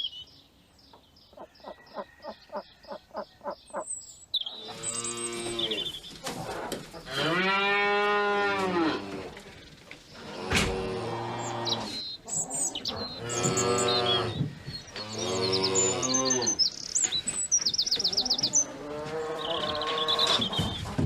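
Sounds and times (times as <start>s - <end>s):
small birds chirping: 0.0s - 7.4s, 9.1s - 21.0s
cattle mooing: 7.1s - 9.4s, 13.1s - 14.4s, 15.0s - 16.6s.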